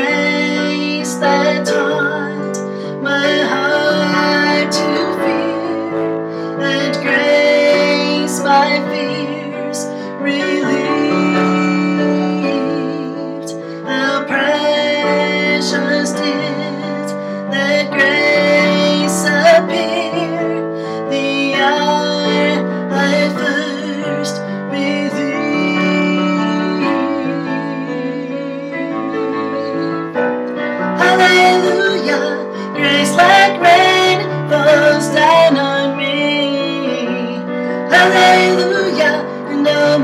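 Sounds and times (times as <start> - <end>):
woman singing with vibrato: 0.0 - 30.2, 30.9 - 40.0
piano accompaniment: 0.0 - 40.0.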